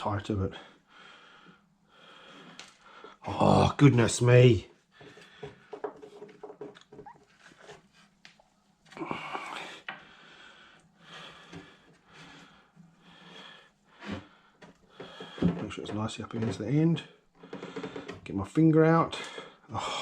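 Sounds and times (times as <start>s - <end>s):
soft effort noises: 0.0s - 20.0s
man breathing: 0.5s - 3.3s, 4.9s - 6.0s, 8.9s - 15.6s, 17.2s - 18.2s
clicks of handling wood and metal: 5.0s - 9.0s, 14.0s - 18.4s.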